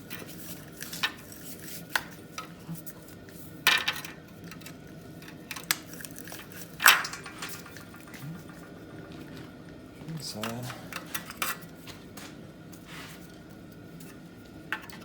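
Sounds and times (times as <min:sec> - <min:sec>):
hand tools and engine parts clinking: 0:03.8 - 0:09.1.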